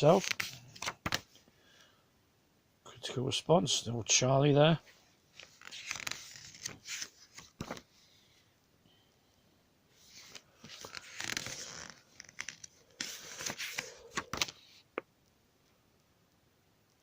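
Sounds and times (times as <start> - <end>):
paper pages rustling: 0.0 - 1.3, 5.3 - 7.9, 10.0 - 15.0.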